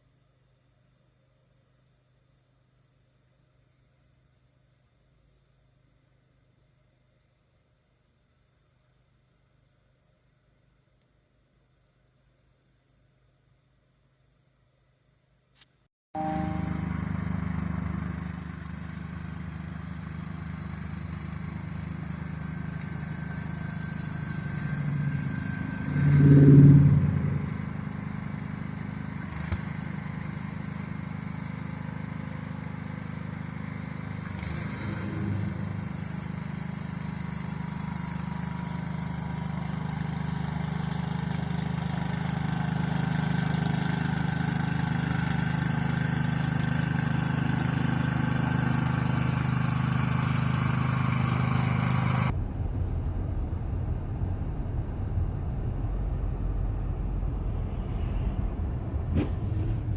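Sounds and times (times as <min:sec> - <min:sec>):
car engine and road noise: 0:16.2 - 0:42.5, 0:48.6 - 0:59.9.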